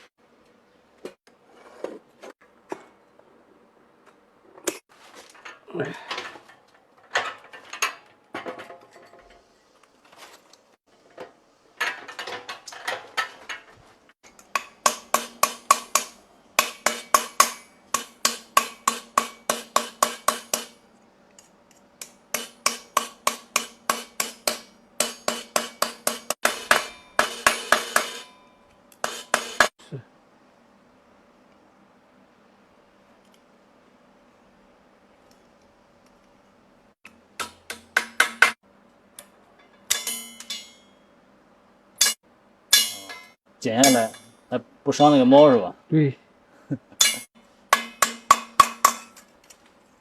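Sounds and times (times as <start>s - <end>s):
hammer strikes with metallic ring: 14.6s - 20.8s, 22.4s - 29.7s, 39.9s - 41.0s, 42.0s - 44.4s, 47.0s - 49.2s.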